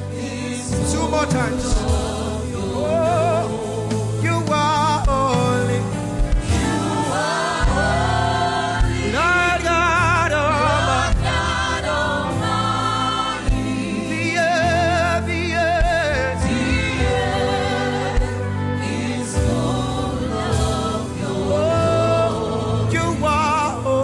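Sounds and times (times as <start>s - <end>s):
band playing: 0.0s - 24.0s
voices singing gospel song: 0.0s - 24.0s
drum hits: 0.8s - 2.6s, 3.9s - 9.2s, 11.1s - 13.9s.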